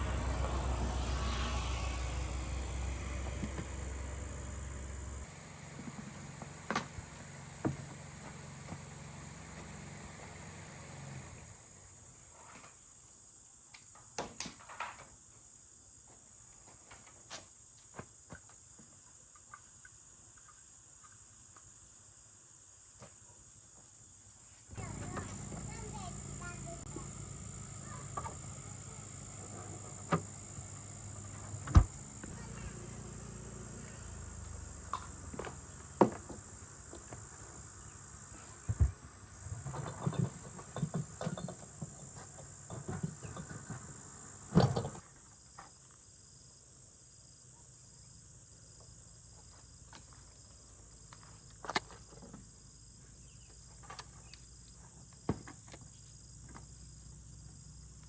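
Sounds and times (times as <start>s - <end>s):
insects chirping: 0.1s - 58.0s
steady low hum: 24.7s - 41.2s
knocks and clatters: 39.6s - 43.9s.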